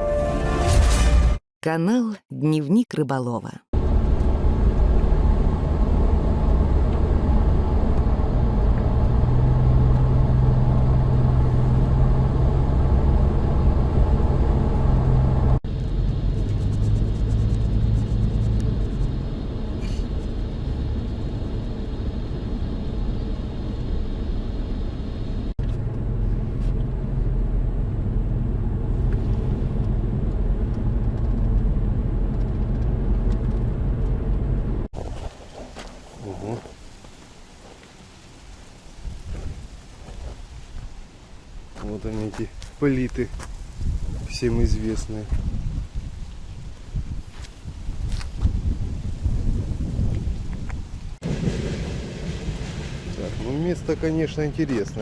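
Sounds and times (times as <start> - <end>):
car engine running: 3.8 - 34.9
road rumble: 3.8 - 55.0.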